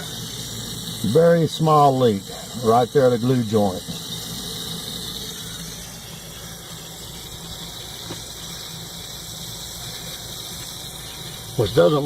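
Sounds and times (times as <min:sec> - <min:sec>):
water jet hissing from leak: 0:00.0 - 0:12.0.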